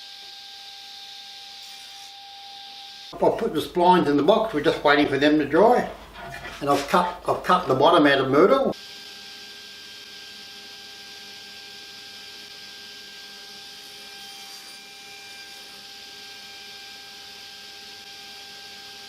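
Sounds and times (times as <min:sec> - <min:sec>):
faint electrical hum: 0:03.2 - 0:08.8.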